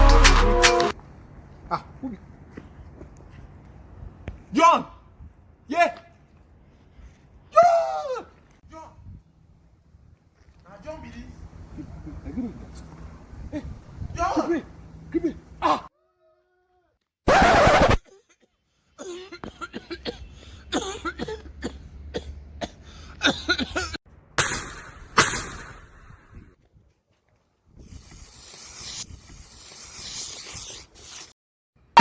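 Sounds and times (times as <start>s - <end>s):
person coughing: 18.1s - 24.0s.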